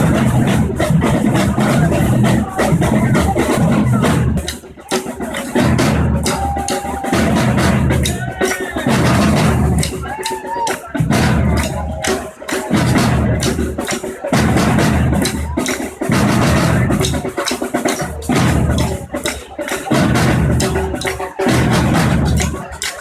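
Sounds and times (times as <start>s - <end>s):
deep bass drums pounding: 0.0s - 4.4s, 5.6s - 8.3s, 8.9s - 10.0s, 11.0s - 12.1s, 16.1s - 17.2s, 18.2s - 19.1s
drum ensemble playing: 0.0s - 23.0s.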